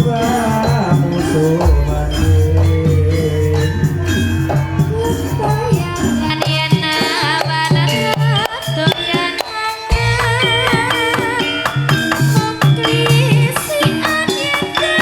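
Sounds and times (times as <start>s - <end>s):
hand drums: 0.0s - 15.0s
rattling percussion: 0.0s - 15.0s
high wavering melody: 1.1s - 6.9s.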